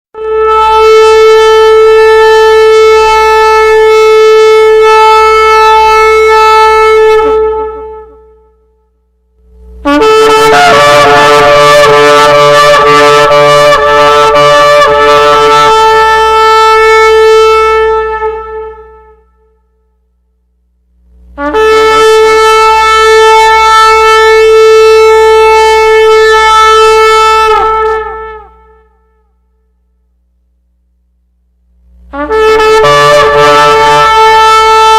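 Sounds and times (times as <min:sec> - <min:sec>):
shofar blasts: 0:00.1 - 0:08.9, 0:09.8 - 0:20.0, 0:21.4 - 0:29.7, 0:32.1 - 0:34.9.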